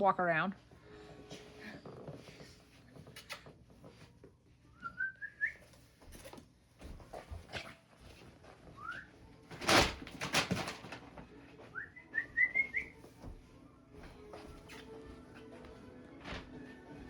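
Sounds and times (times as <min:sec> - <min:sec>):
whistled chirps: 0:04.7 - 0:05.6, 0:08.8 - 0:09.2, 0:11.7 - 0:13.0.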